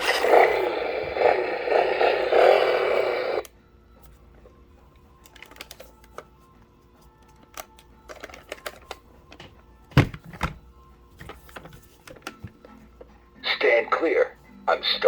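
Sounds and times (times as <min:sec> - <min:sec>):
tinny toy engine sound effect: 0:00.0 - 0:03.4.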